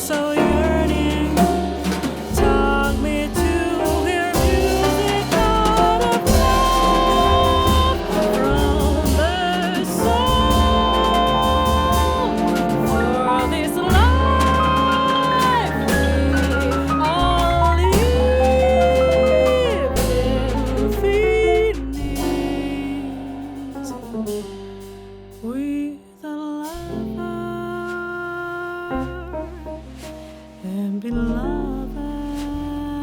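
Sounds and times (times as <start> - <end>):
drums with cymbal strokes: 0.0 - 25.4
double bass: 0.0 - 33.0
piano: 0.0 - 33.0.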